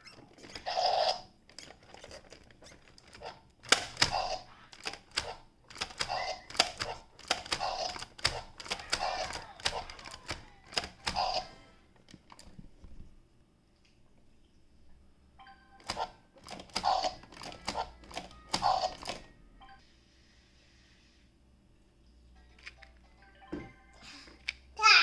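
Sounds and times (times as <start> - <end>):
plastic toy clicks and knocks: 1.5 - 11.4, 15.8 - 19.3.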